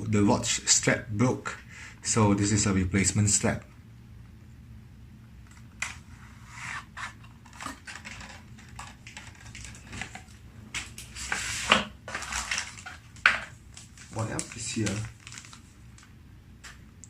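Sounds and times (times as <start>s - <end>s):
plastic packaging rustling: 6.8s - 16.2s.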